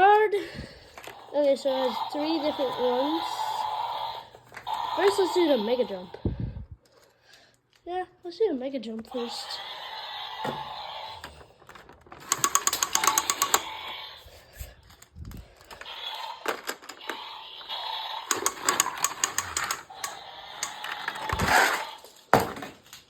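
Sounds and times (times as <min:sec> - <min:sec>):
toy track clatter: 0:00.9 - 0:06.1, 0:10.4 - 0:23.0
rapid plastic clicking: 0:11.2 - 0:13.8, 0:18.2 - 0:22.2.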